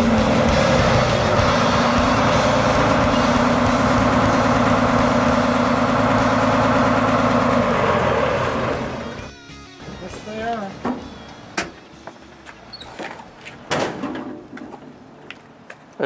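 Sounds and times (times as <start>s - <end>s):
fire truck engine idling: 0.0s - 9.2s.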